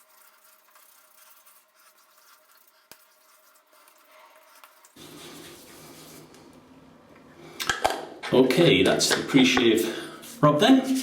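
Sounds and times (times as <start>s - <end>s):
hands rubbing cream on skin: 4.6s - 6.5s.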